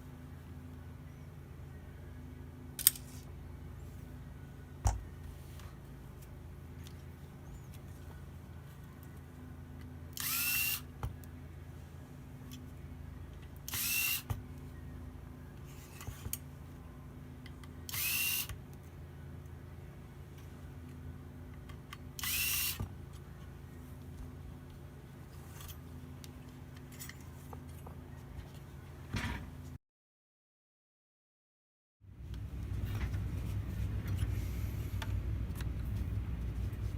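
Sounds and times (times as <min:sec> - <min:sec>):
small electric screwdriver whirring: 0:10.2 - 0:10.9, 0:13.7 - 0:14.3, 0:17.9 - 0:18.6, 0:22.2 - 0:22.9.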